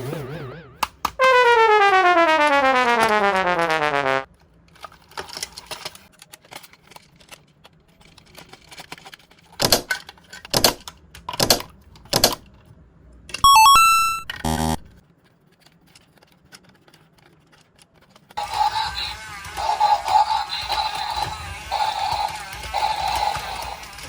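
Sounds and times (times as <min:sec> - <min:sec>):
electronic beeps: 0:13.4 - 0:14.9.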